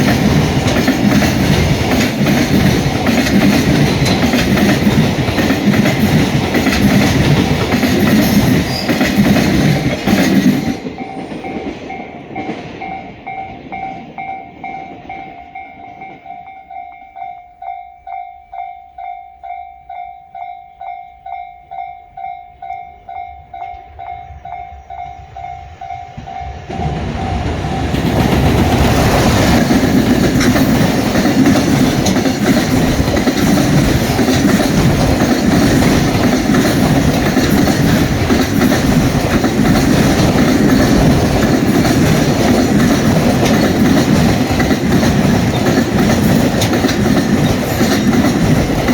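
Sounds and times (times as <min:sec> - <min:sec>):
train wheels clattering over rail joints: 0:00.0 - 0:12.9, 0:26.8 - 0:48.9
level crossing warning bell: 0:10.5 - 0:26.7.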